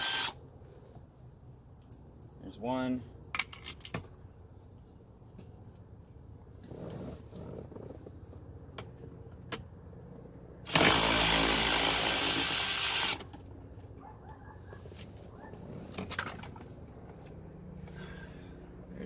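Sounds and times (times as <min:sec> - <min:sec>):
cordless power tool running: 0:00.0 - 0:00.4, 0:10.7 - 0:13.3.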